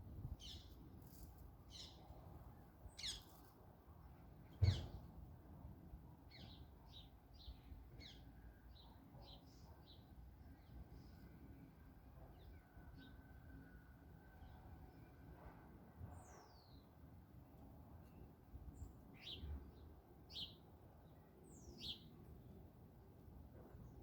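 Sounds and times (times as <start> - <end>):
small birds chirping: 0.4 - 2.2, 2.9 - 3.5, 4.4 - 5.1, 6.3 - 11.3, 18.7 - 22.3
low thump: 4.6 - 5.0.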